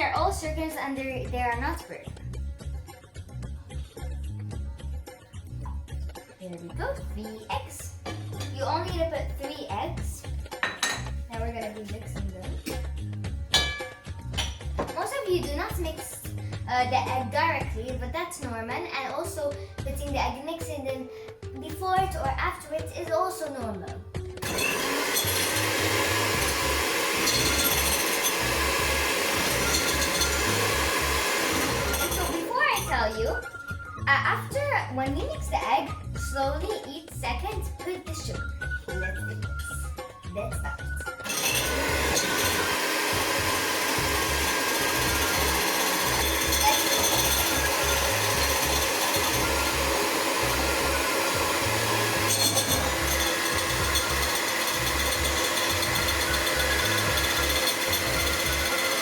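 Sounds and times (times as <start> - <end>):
background music: 0.0 - 59.0
electric mixer beating eggs: 24.4 - 33.6, 41.1 - 59.0.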